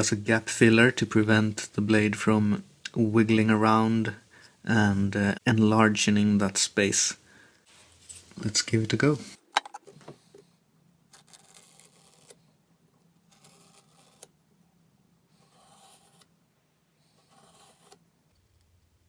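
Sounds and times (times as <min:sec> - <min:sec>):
knife scoring wood: 0:11.1 - 0:14.5, 0:15.2 - 0:16.4, 0:17.0 - 0:18.3.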